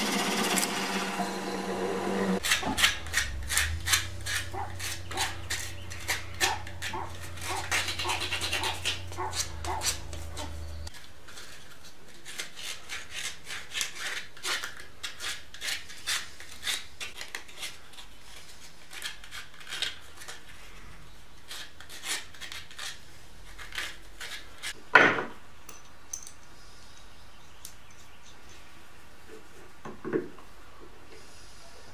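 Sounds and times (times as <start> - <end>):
small motor humming: 0.0 - 2.4
rubbing and scraping wood: 2.3 - 20.8.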